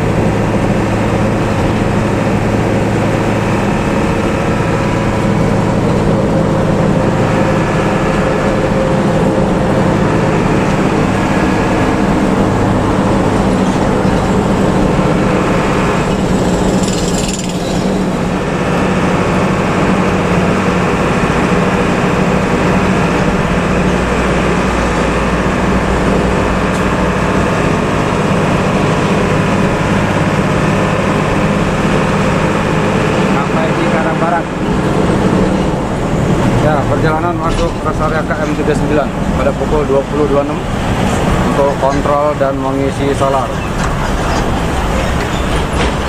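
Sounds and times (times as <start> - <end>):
bus diesel engine running: 0.0 - 46.0.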